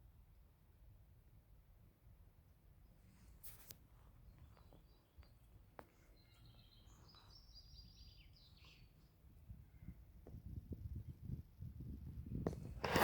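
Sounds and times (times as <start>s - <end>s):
bird chirping: 4.1s - 9.3s.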